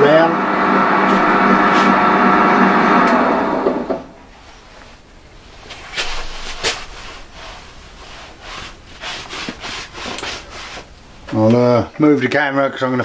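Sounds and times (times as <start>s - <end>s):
rubbing and scraping on wood: 4.3s - 11.5s.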